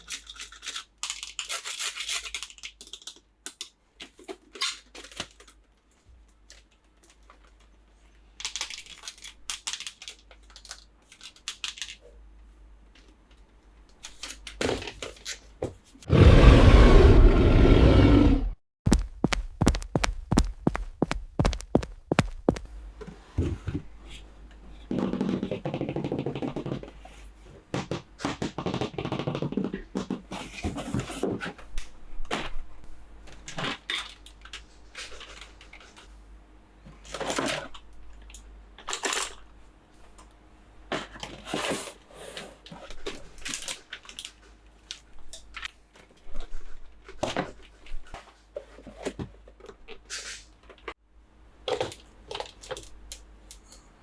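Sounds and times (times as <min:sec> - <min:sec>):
plastic toys clicking and tapping: 0:00.0 - 0:07.7, 0:08.4 - 0:12.0, 0:51.7 - 0:53.9.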